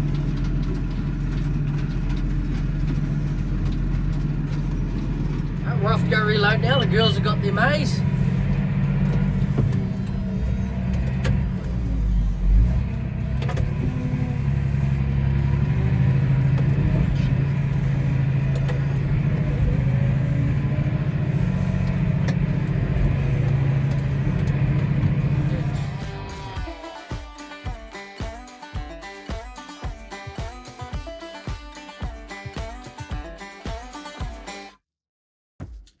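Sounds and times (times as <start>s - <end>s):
tractor engine rumbling: 0.0s - 27.1s.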